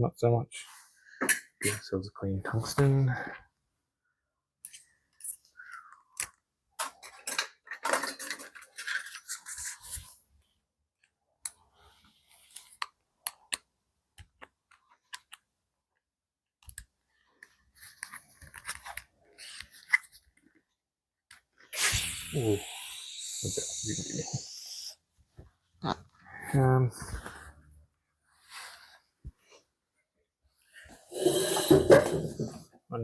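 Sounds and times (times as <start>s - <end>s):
small metal parts clicking and scraping: 6.8s - 10.0s.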